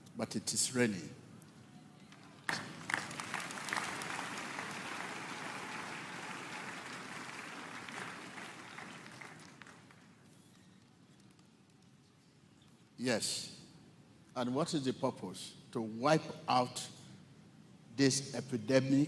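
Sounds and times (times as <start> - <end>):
congregation applauding: 2.2 - 10.2.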